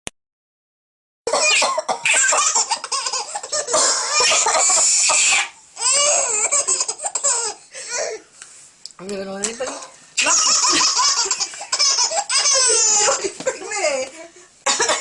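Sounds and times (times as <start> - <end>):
baby laughing and giggling: 1.3 - 8.2, 10.2 - 13.6
adult coughing: 14.7 - 15.0.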